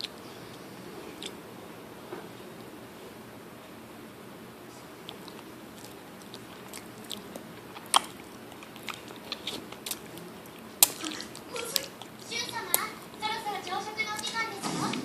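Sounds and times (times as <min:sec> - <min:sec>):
crunching and clicking: 0:05.0 - 0:15.0.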